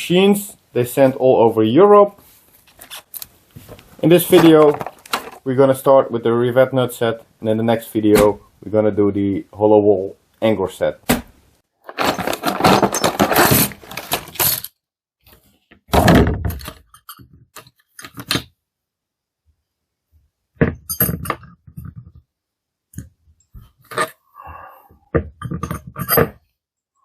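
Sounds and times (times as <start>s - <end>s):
rustling packaging: 4.1s - 5.5s, 11.8s - 14.7s.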